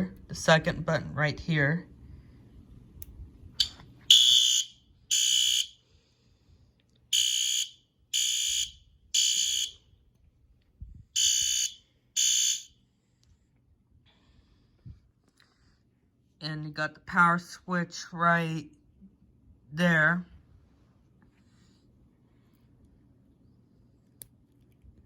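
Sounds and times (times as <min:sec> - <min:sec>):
fire alarm horn blasts: 0:04.1 - 0:05.8, 0:07.1 - 0:09.9, 0:11.2 - 0:12.7.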